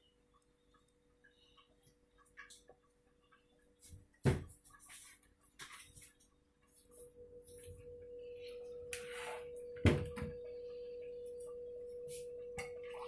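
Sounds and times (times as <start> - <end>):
steady ringing tone: 6.9 - 13.0.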